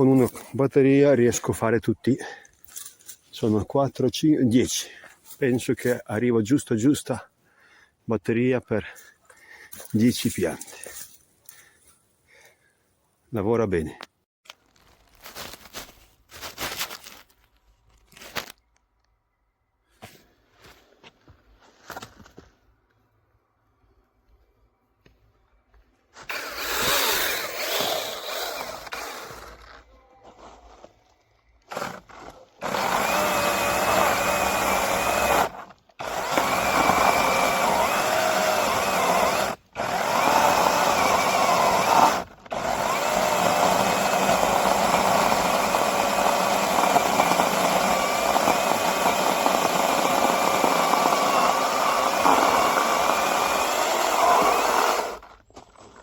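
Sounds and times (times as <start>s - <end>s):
electric chainsaw cutting wood: 26.3s - 29.6s, 31.7s - 55.3s.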